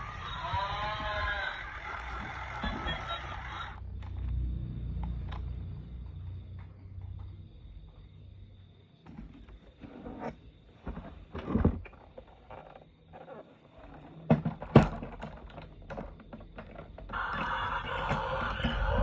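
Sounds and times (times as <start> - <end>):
plastic toys knocking and clicking: 0.0 - 4.2, 11.3 - 19.0.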